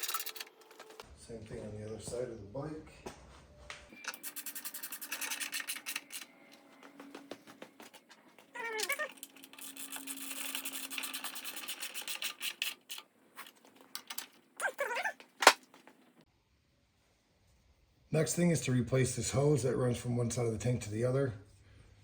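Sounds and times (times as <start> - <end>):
cat meowing: 8.6 - 9.2, 14.6 - 15.2.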